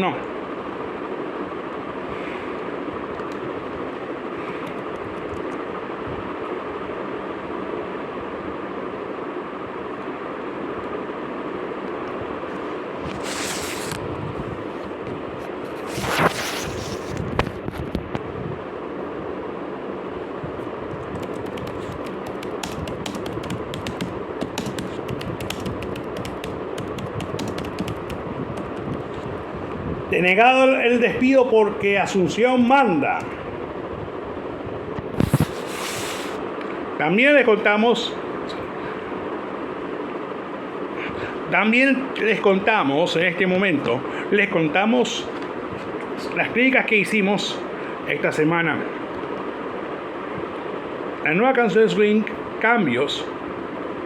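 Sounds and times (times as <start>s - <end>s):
steady rushing noise: 20.7s - 30.4s
rapid irregular clicks: 21.0s - 29.2s.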